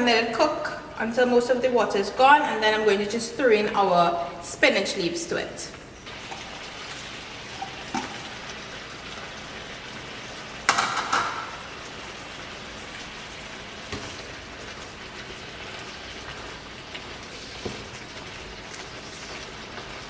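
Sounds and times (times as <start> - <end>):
sauce bubbling and sizzling in pan: 6.0 - 20.0.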